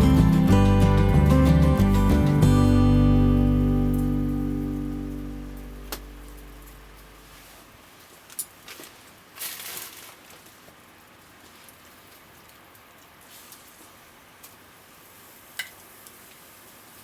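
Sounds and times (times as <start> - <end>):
background guitar music: 0.0 - 7.3
faint patter of noise: 3.1 - 17.0
brief rustle: 6.3 - 10.7.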